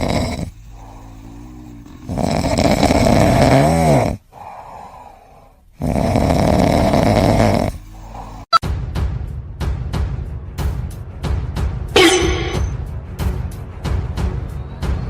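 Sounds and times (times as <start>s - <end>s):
whistling snore tone: 0.0s - 4.2s, 5.8s - 8.6s
pet snoring loudly: 0.0s - 4.5s, 5.8s - 8.5s.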